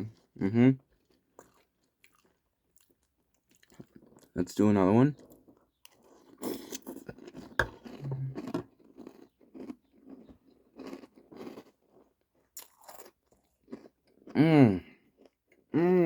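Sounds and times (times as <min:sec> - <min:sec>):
chewing crunchy cereal: 0:00.1 - 0:15.7
person humming: 0:08.0 - 0:08.4.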